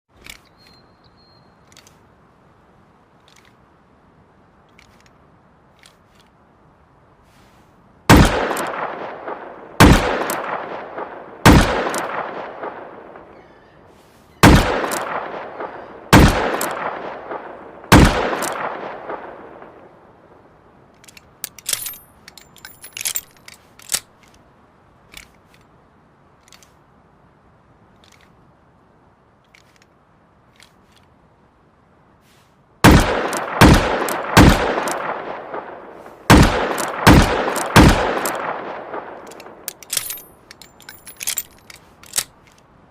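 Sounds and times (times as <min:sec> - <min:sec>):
metallic clicks and clinks: 0:21.0 - 0:24.4, 0:39.2 - 0:42.7.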